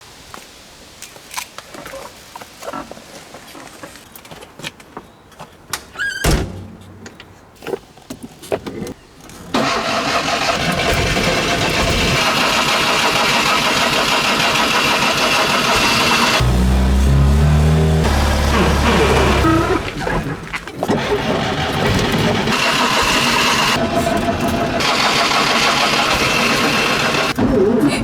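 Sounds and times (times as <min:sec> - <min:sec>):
engine cranking on starter: 0:09.6 - 0:27.7.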